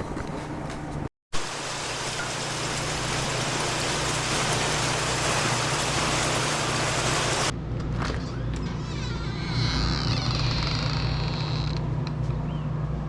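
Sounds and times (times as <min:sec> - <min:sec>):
rain hiss: 0:01.3 - 0:07.5.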